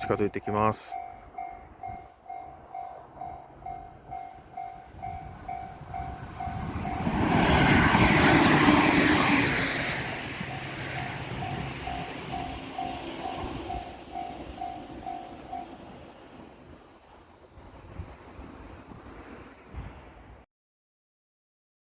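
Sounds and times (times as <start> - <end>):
level crossing bell ringing: 0.0 - 7.1, 10.4 - 15.8
passing train: 0.0 - 20.4.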